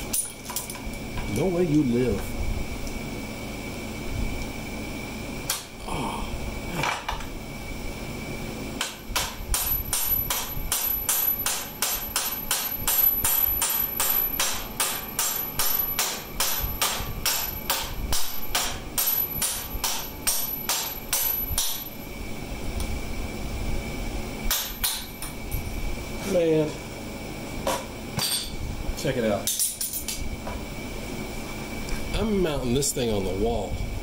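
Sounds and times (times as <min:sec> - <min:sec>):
hammer striking metal: 0:08.8 - 0:21.9.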